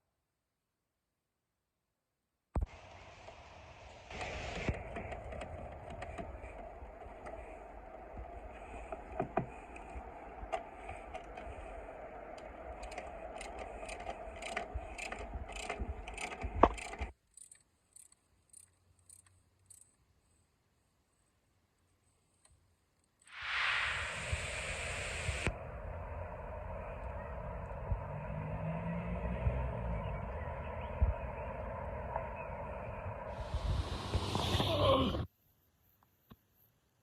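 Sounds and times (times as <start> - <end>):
evenly spaced ticks: 4.1 - 20.0.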